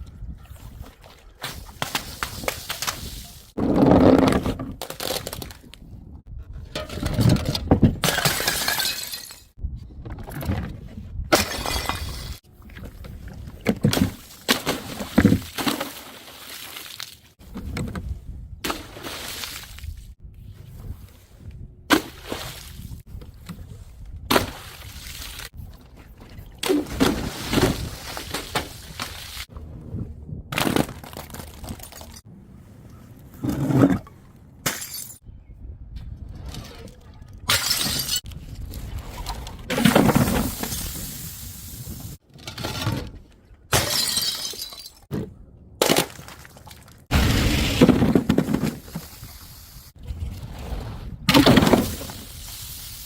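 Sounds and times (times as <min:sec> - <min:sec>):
glass bottles shattering: 0:08.0 - 0:09.5, 0:11.4 - 0:12.4, 0:34.7 - 0:35.2, 0:37.5 - 0:38.3, 0:43.8 - 0:45.1.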